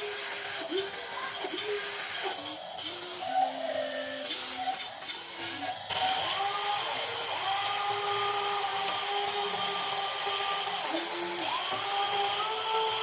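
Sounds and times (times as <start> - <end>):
electric gear motors whining: 0.0 - 13.0.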